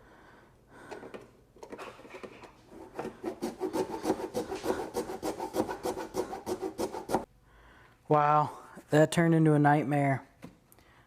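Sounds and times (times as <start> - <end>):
hand saw cutting metal: 2.8 - 7.3.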